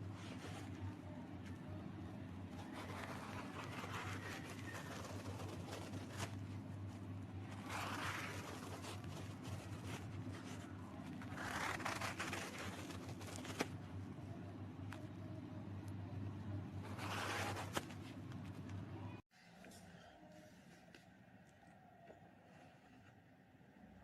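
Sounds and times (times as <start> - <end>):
low steady hum: 0.0 - 24.0
gritty sand scraping: 7.5 - 13.8.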